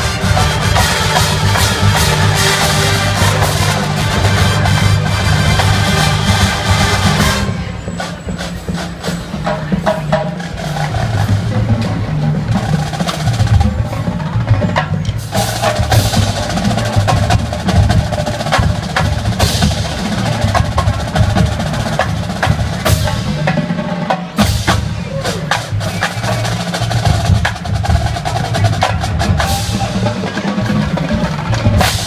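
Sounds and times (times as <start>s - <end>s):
low brass playing: 0.0s - 8.2s
drumline playing: 0.0s - 32.0s.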